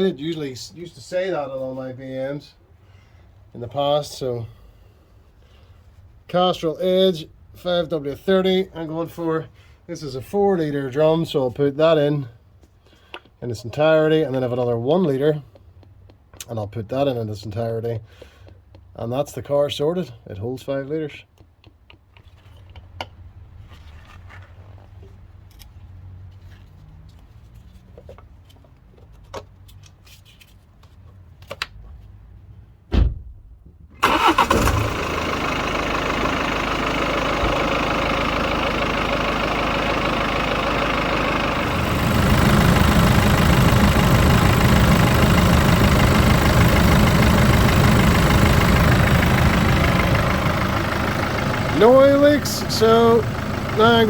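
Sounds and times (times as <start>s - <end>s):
thump: 32.9s - 33.5s
diesel car engine starting and idling: 34.0s - 54.0s.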